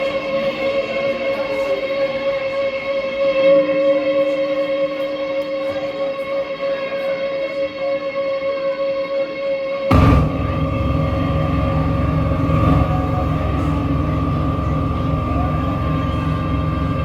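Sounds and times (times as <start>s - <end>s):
low drone tone: 3.4s - 6.9s, 9.9s - 17.0s
overlapping drone tones: 9.9s - 17.0s.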